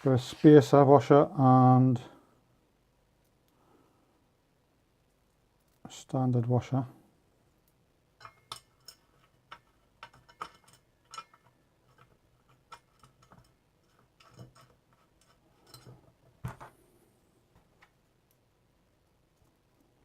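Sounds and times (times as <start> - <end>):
small metal parts clicking: 7.7 - 16.0.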